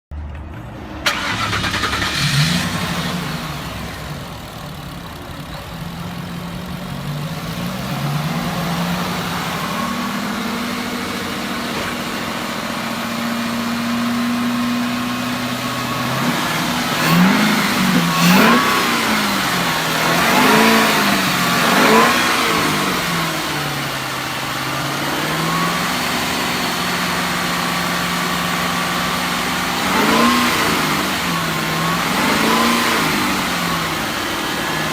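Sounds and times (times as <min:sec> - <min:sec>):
car engine starting and idling: 0:00.2 - 0:34.9
engine revving blips: 0:01.0 - 0:26.8, 0:29.5 - 0:34.9.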